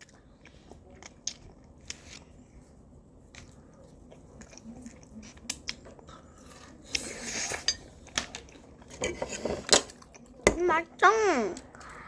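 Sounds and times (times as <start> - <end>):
biting and chewing food: 3.2 - 10.4.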